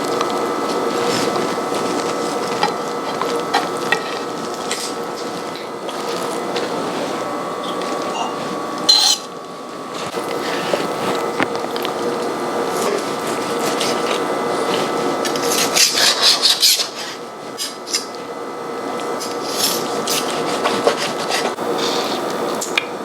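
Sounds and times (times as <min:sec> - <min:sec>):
kitchen utensils scraping: 0:02.5 - 0:09.4, 0:14.8 - 0:18.1.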